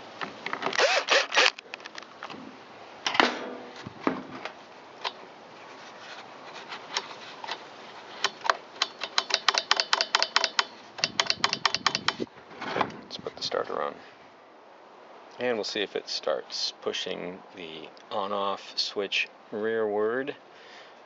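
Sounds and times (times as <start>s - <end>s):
fast run of clicks: 8.8s - 12.3s.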